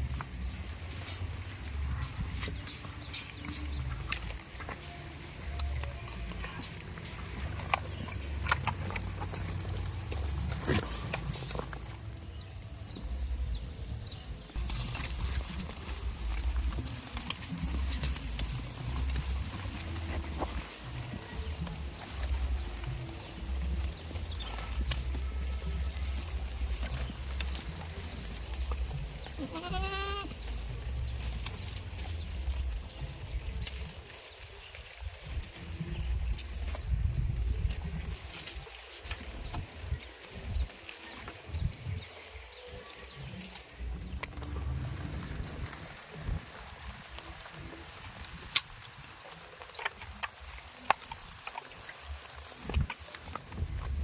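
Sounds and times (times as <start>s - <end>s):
goat hooves clicking and knocking: 0.0s - 54.0s
goat bleating: 29.0s - 30.8s.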